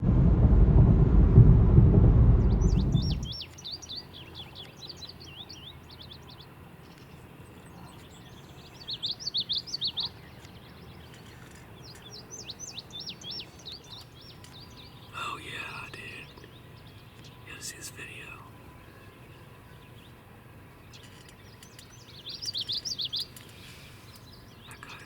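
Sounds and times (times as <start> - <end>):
low rumble on microphone: 0.0 - 3.4
songbirds chirping: 2.4 - 25.0.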